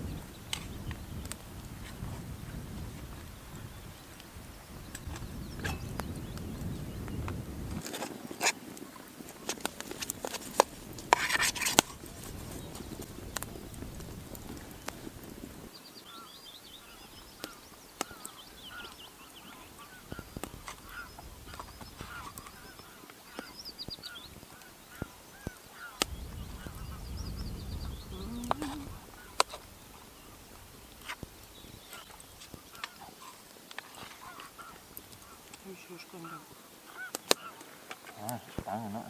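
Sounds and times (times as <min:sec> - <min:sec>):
geese honking: 0:11.1 - 0:27.1, 0:27.8 - 0:39.0
sharp cracks: 0:17.3 - 0:27.5, 0:37.0 - 0:38.7.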